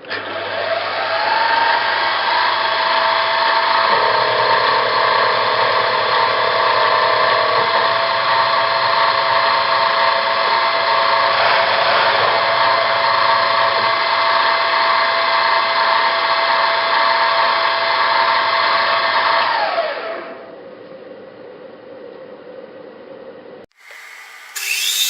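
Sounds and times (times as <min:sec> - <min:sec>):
milling machine spindle whine: 0:23.8 - 0:25.0.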